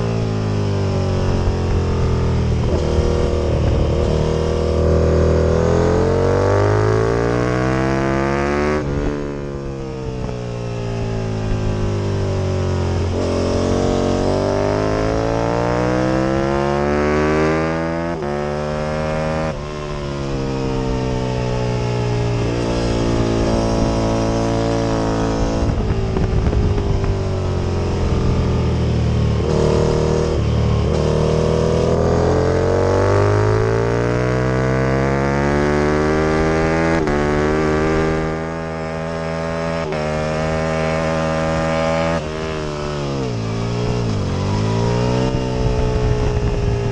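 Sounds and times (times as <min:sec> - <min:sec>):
motorcycle engine racing: 0:00.0 - 0:46.9.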